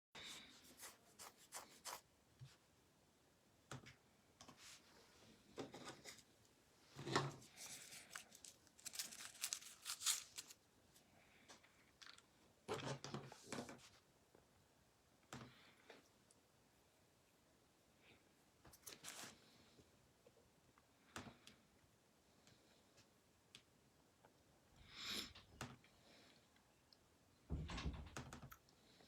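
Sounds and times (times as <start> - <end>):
packaging tearing and crinkling: 7.6 - 10.6.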